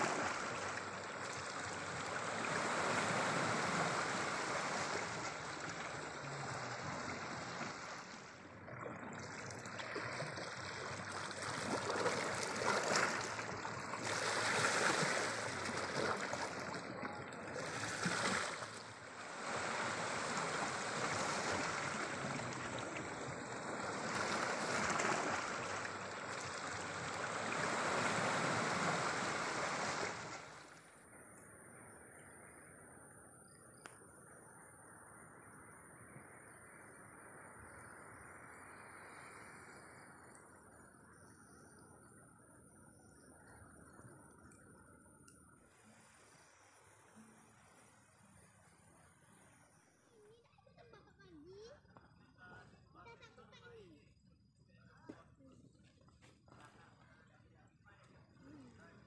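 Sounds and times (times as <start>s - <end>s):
sea surf washing in: 0.0s - 30.9s.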